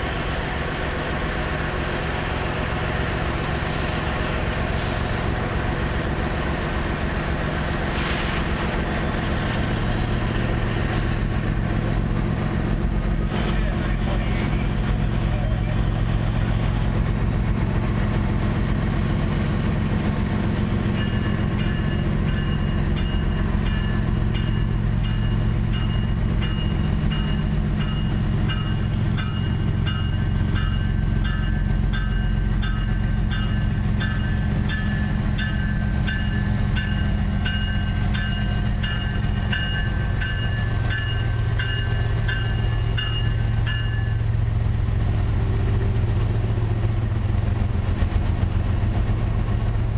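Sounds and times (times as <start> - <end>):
diesel locomotives rumbling: 0.0 - 49.9
locomotive bell ringing: 9.1 - 47.8.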